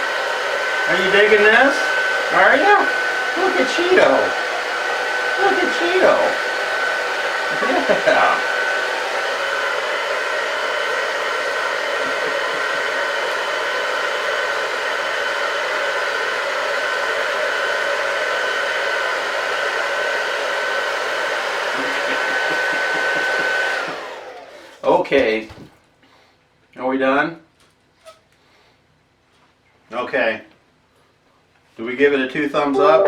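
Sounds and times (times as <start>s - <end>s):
hair dryer running: 0.0s - 24.8s.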